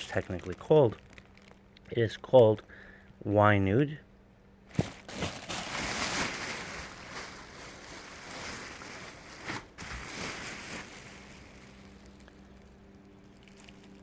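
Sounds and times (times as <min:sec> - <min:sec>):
dress fabric rustling: 0:04.7 - 0:12.7.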